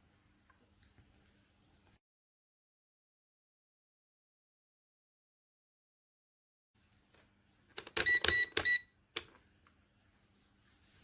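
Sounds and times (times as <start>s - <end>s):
continuity buzzer beeps: 8.0s - 8.9s.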